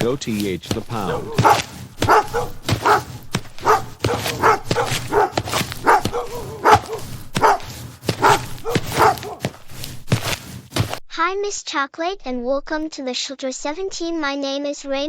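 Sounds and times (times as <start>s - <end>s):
dog barking: 0.7s - 10.3s.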